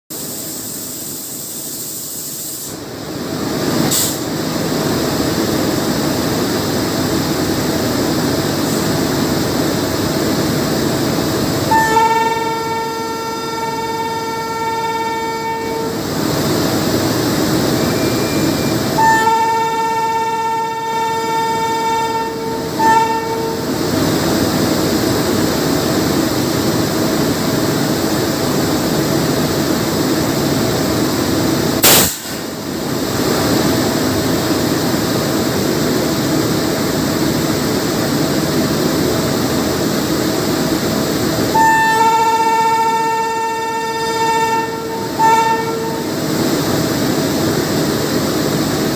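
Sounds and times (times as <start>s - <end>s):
train running noise: 0.1s - 48.9s
locomotive horn blasts: 11.6s - 16.0s, 17.9s - 23.7s, 41.5s - 46.2s
single sharp crack: 31.8s - 32.5s.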